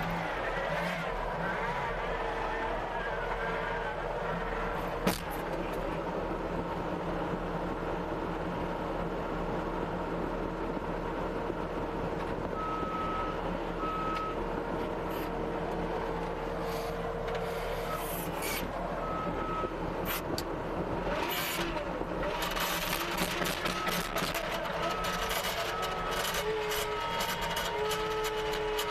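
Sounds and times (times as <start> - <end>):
diesel engine running: 0.0 - 28.9
reversing alarm beeping: 12.6 - 14.4, 23.4 - 27.8.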